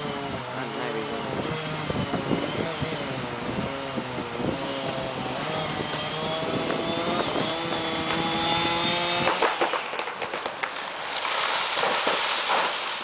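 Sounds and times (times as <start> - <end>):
chainsaw cutting wood: 0.0 - 13.0
wood cracking and snapping: 5.8 - 13.0.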